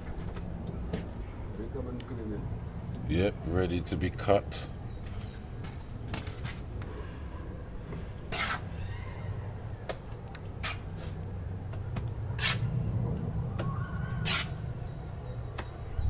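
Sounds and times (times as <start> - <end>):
hand tool scraping brick: 8.3 - 8.7, 12.4 - 12.7, 14.2 - 14.6.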